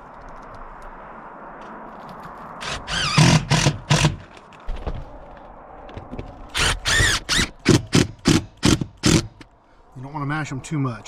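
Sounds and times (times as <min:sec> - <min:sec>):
drill driving screws into metal: 0:02.6 - 0:04.3, 0:06.6 - 0:09.4.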